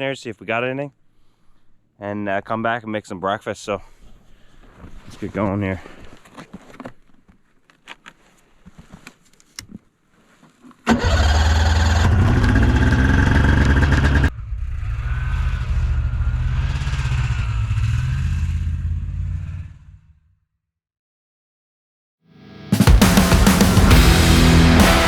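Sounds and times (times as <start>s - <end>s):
snowmobile engine running: 22.8s - 25.0s.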